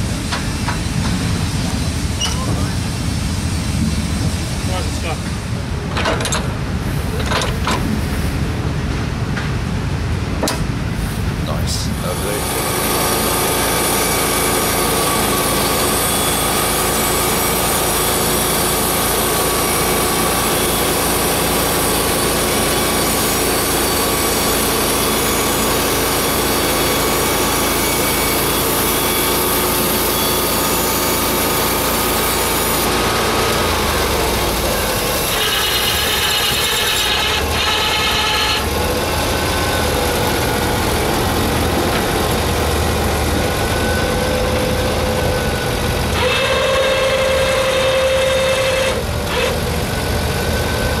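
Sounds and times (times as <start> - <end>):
sawmill engine under load: 0.0 - 51.0
blade sawing through log: 12.1 - 44.7, 46.2 - 49.6.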